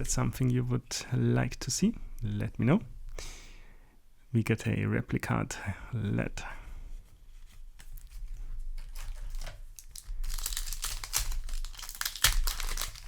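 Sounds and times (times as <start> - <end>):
foil wrapper crinkling: 7.5 - 13.0.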